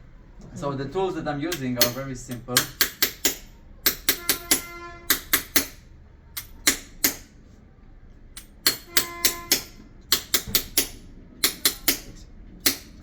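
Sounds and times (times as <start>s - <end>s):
hammer tapping metal tool: 1.5s - 7.4s, 8.3s - 13.0s.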